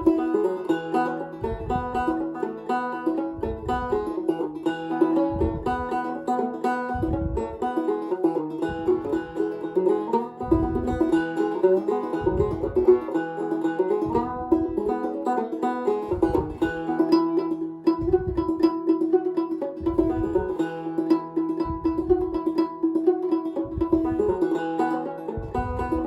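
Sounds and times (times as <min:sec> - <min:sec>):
low thump: 0:00.0 - 0:00.2, 0:01.3 - 0:02.2, 0:03.2 - 0:06.0, 0:06.8 - 0:07.8, 0:08.6 - 0:09.5, 0:10.4 - 0:11.2, 0:12.1 - 0:13.2, 0:14.0 - 0:14.9, 0:16.0 - 0:16.7, 0:17.9 - 0:18.7, 0:19.8 - 0:20.6, 0:21.6 - 0:22.3, 0:25.4 - 0:26.0
banjo plucked notes: 0:00.0 - 0:26.0.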